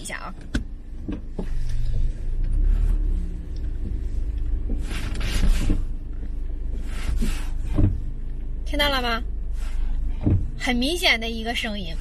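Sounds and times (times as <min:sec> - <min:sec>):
car brakes clunking and scraping: 0:00.0 - 0:12.0
low rumble of moving car: 0:00.0 - 0:12.0.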